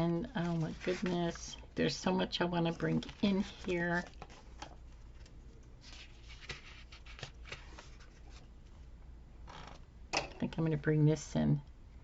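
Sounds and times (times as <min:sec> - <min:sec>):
paper and stickers rustling: 0:00.3 - 0:08.5.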